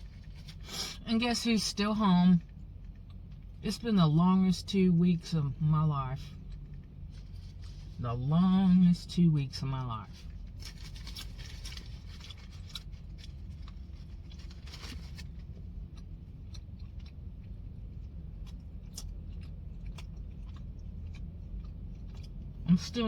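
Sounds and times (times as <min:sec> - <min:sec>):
steady low hum: 0:00.0 - 0:23.0
person chewing: 0:11.0 - 0:22.6.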